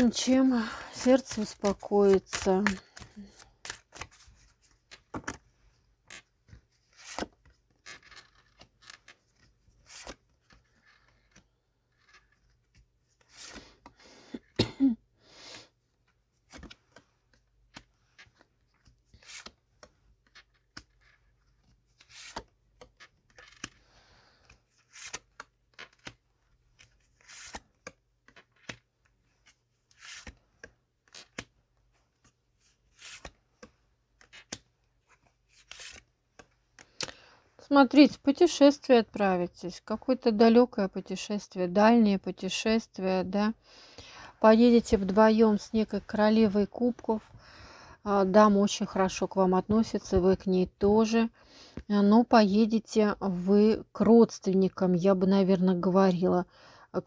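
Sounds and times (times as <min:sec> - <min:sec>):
cards rustling: 0:00.0 - 0:14.0, 0:16.0 - 0:37.2.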